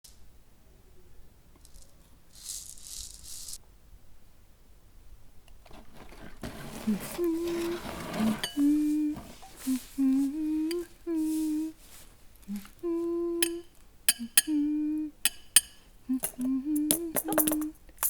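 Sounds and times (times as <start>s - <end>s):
person humming a tune: 6.8s - 17.8s.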